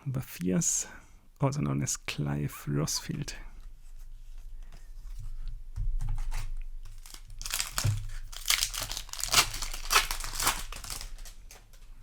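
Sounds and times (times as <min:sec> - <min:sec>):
foil wrapper crinkling and tearing: 0:06.8 - 0:11.8.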